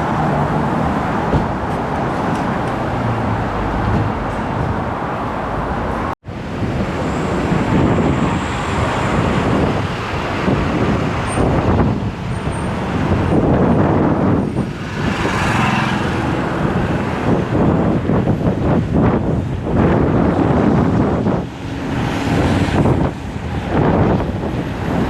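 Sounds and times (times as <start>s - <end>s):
street traffic: 0.0s - 25.0s
wind on microphone: 0.0s - 25.0s
vehicle passing: 14.7s - 17.7s.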